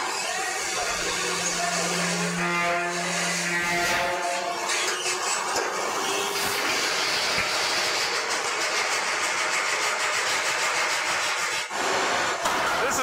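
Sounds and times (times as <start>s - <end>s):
factory machinery rattling: 0.0s - 13.0s.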